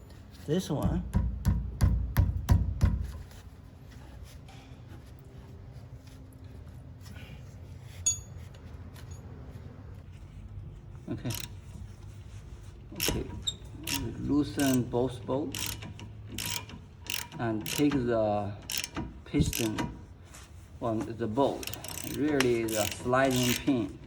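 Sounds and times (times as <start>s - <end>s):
tools clinking: 8.0s - 9.3s, 11.3s - 11.6s, 13.0s - 20.0s, 21.6s - 24.0s
ratchet wrench clicking: 11.3s - 11.6s, 13.0s - 20.0s, 21.6s - 24.0s.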